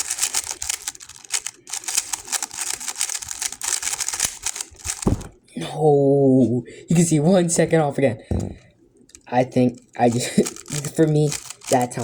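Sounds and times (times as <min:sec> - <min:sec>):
puzzle cube clicking: 0:00.0 - 0:05.3, 0:09.1 - 0:12.0.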